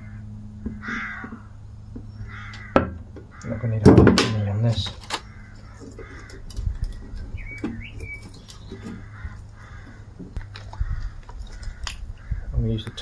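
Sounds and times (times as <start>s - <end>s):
low hum: 0.0s - 13.0s
small bird chirping: 5.3s - 9.5s.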